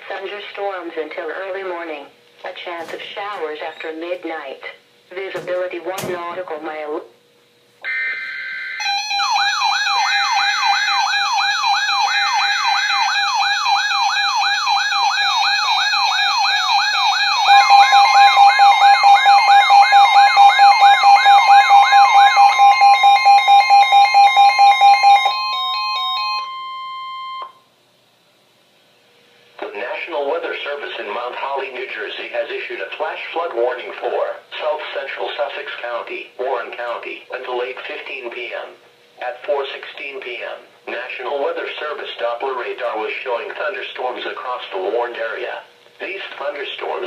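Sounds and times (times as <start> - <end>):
electronic siren wailing: 7.8 - 27.6
layered alarm tones: 7.8 - 27.6
steady single alarm tone: 7.8 - 27.7.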